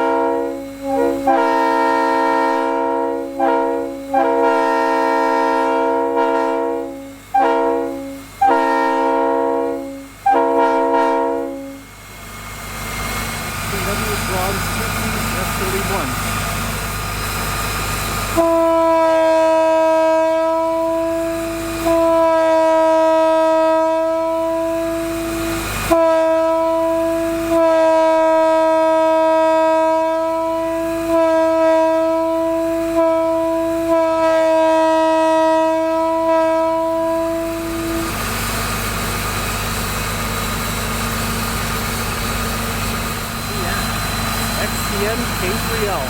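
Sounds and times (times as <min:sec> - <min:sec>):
locomotive air horn blasts: 0:00.0 - 0:12.0, 0:18.2 - 0:39.5, 0:41.0 - 0:46.0
low engine hum: 0:11.8 - 0:18.4, 0:37.5 - 0:46.0.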